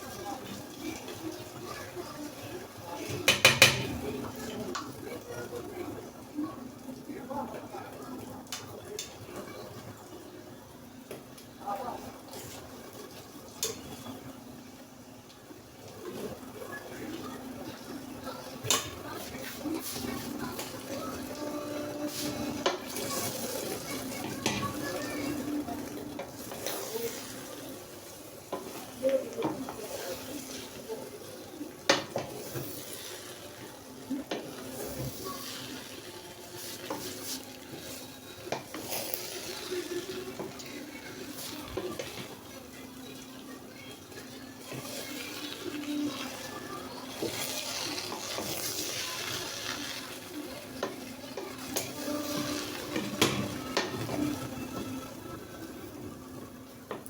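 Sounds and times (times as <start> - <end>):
spoon stirring sizzling rice: 17.7 - 57.0.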